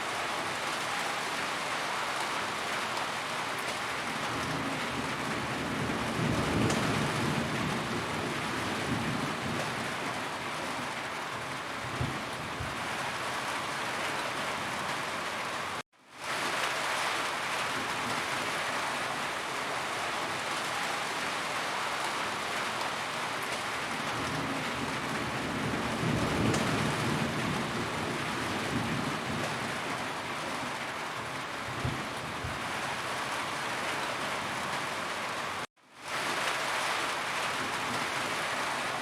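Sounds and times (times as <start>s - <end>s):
heavy rain on a roof: 0.0s - 39.0s
low rumble of thunder: 4.2s - 10.2s, 11.8s - 13.0s, 24.0s - 30.1s, 31.6s - 32.8s.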